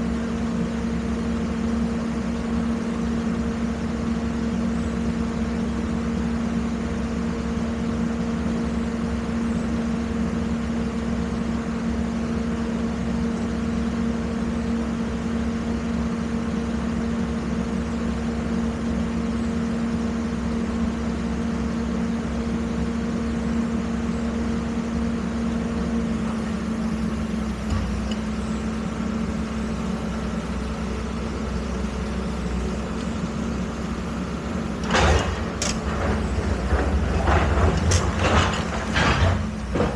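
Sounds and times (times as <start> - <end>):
excavator engine running: 0.0 - 39.9.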